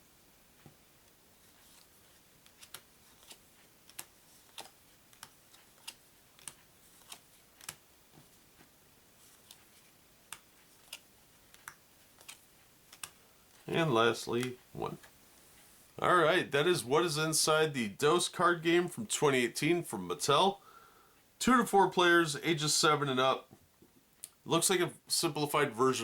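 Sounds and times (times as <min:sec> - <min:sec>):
playing cards laid on a table: 0:00.6 - 0:15.8.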